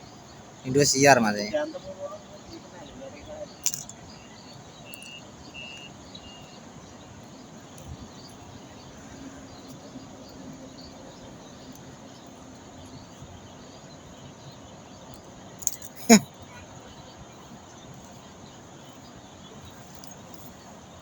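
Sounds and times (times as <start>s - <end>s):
steady outdoor hiss: 0.0s - 21.0s.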